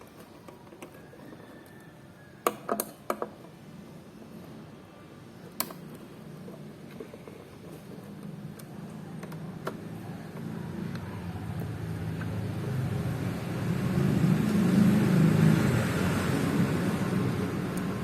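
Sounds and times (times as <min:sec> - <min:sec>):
vehicle engine and tyre noise: 0:03.8 - 0:18.0.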